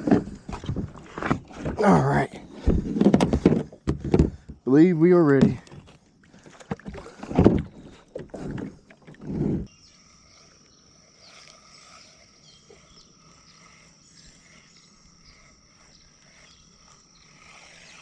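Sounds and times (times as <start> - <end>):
kayak paddle splashing strokes: 5.4 - 9.7
bird chirps: 9.7 - 18.0
high-pitched insect drone: 9.7 - 18.0.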